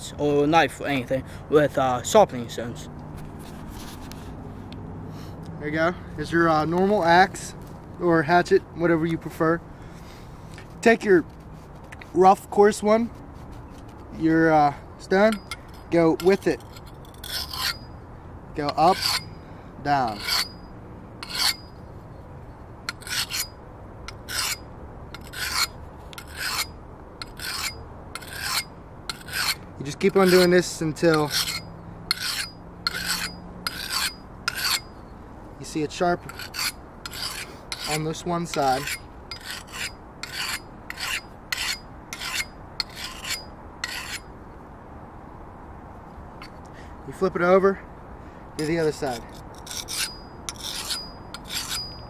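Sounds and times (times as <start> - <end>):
sharpening stone rasping on blade: 15.3 - 17.9, 18.7 - 19.4, 20.0 - 21.7, 22.9 - 24.6, 25.2 - 35.0, 36.2 - 44.3, 48.6 - 52.0.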